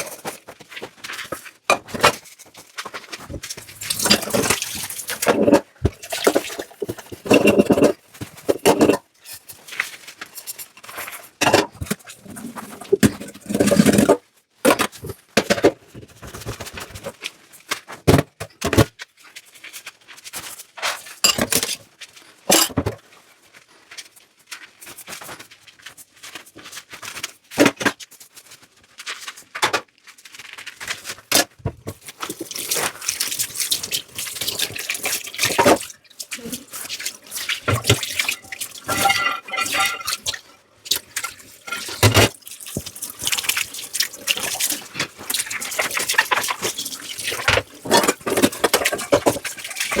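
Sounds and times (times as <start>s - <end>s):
dishes and cutlery clinking: 3.8s - 4.6s, 5.2s - 9.0s, 21.2s - 21.8s, 22.5s - 23.0s, 37.6s - 40.5s
water running: 3.8s - 7.7s, 32.2s - 50.0s.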